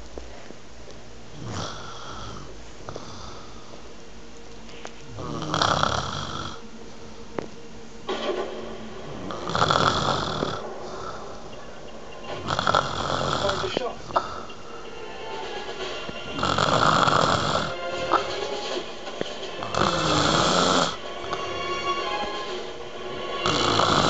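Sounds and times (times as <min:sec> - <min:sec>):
person snoring: 0:01.3 - 0:03.8, 0:05.1 - 0:06.6, 0:09.0 - 0:11.5, 0:12.4 - 0:14.6, 0:16.3 - 0:18.5, 0:19.6 - 0:21.6, 0:23.2 - 0:24.0.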